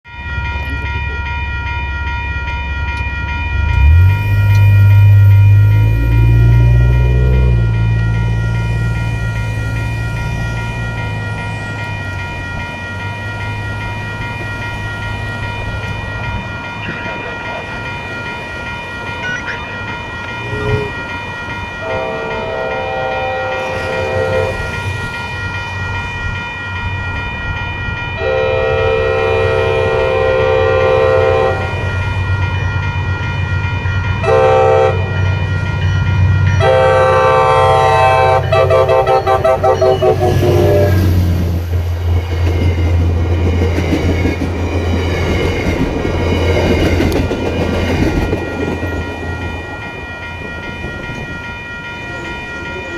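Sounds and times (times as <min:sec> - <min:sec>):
crossing bell ringing: 0:00.0 - 0:52.9
diesel locomotive engine rumbling: 0:00.0 - 0:52.9
train air horn: 0:21.8 - 0:24.8, 0:28.2 - 0:31.9, 0:34.2 - 0:35.1, 0:36.6 - 0:41.0.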